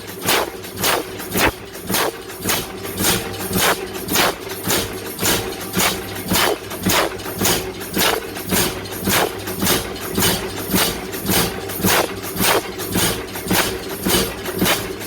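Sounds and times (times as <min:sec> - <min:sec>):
steady hum: 0:00.0 - 0:02.2, 0:03.6 - 0:04.4, 0:05.8 - 0:07.2, 0:08.0 - 0:08.2, 0:09.1 - 0:09.4, 0:11.9 - 0:12.6
hammer striking hot iron: 0:00.0 - 0:02.7, 0:03.5 - 0:04.5, 0:05.8 - 0:09.4, 0:11.8 - 0:15.0.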